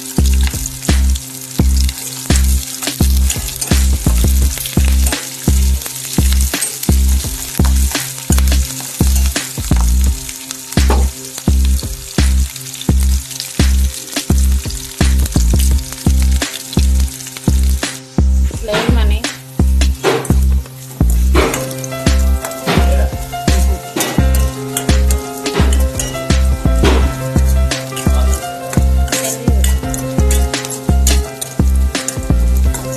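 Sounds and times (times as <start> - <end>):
food sizzling in a pan: 0.0 - 32.9
music with deep beat: 0.0 - 32.9
stirring scrapes and clinks: 21.4 - 26.3.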